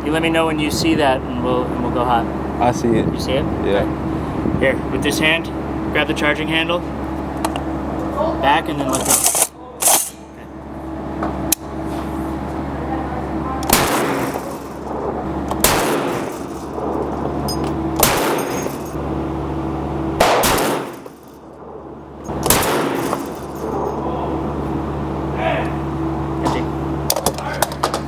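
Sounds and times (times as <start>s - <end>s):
steady low hum: 0.0s - 28.0s
rifle shots: 13.6s - 15.0s, 15.6s - 17.0s, 18.0s - 18.8s, 20.2s - 21.2s, 22.4s - 23.6s.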